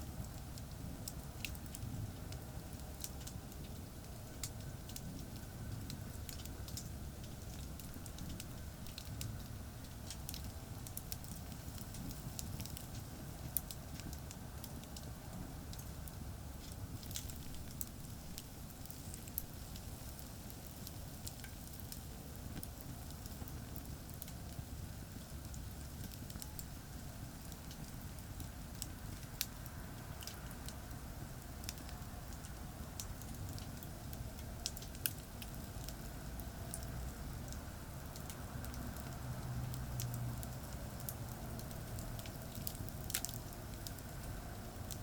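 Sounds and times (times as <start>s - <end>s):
campfire crackling and popping: 0.0s - 45.0s
distant highway traffic rumble: 25.8s - 45.0s.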